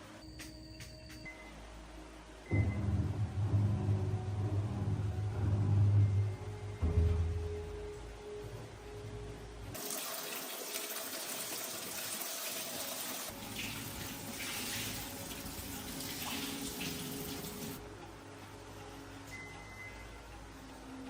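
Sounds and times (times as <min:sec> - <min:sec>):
water running: 0:09.8 - 0:17.8.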